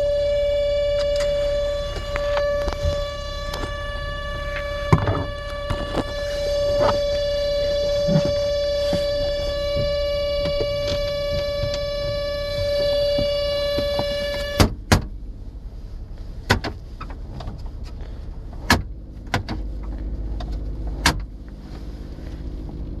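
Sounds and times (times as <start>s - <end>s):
high-pitched whine: 0.0s - 16.2s
low rumble: 0.0s - 23.0s.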